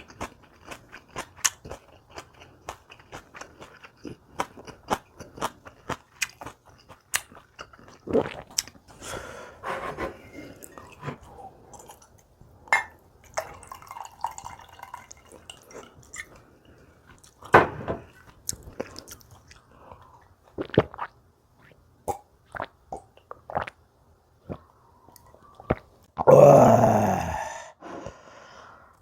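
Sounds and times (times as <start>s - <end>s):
close-miked chewing food: 0.0s - 8.9s, 18.1s - 23.8s.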